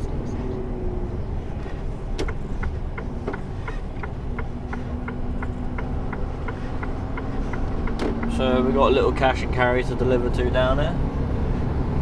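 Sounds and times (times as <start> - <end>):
diesel engine and road noise: 0.0 - 12.0
turn indicator ticking: 2.1 - 8.7.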